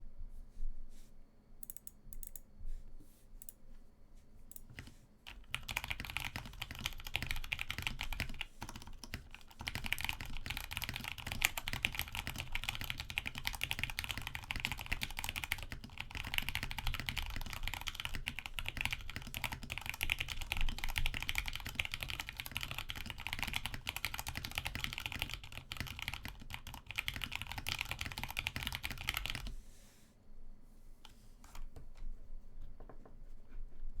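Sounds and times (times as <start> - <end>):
mechanical keyboard typing: 4.5 - 29.5.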